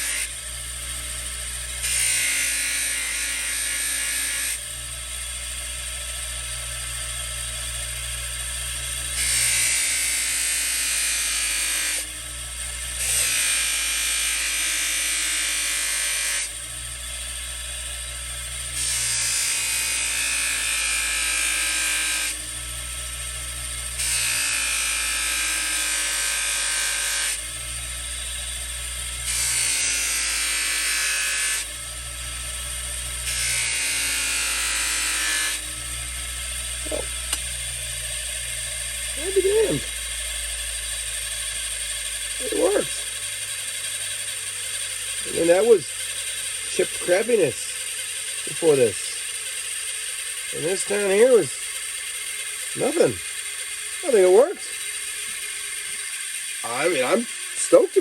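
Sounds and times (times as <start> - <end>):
polishing wheel motor humming: 0.0 - 58.0
metal scrubbing on buffing wheel: 17.4 - 58.0.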